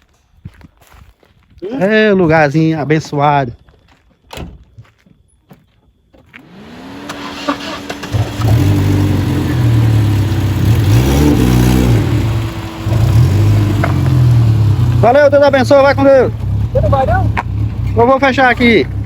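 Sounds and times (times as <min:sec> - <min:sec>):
car engine driving slowly: 0:06.1 - 0:19.0.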